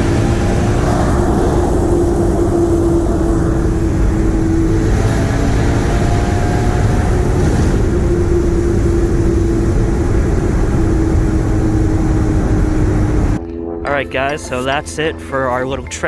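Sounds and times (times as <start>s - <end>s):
car engine drone: 0.0s - 16.0s
road and tyre rumble: 0.0s - 16.0s.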